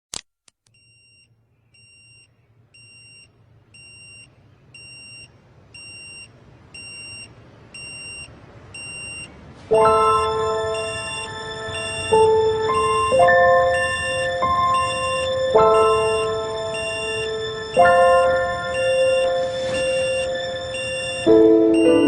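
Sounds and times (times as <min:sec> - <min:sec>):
short high electronic beeps: 0:09.1 - 0:22.0
music with bell-like chimes: 0:09.7 - 0:22.0.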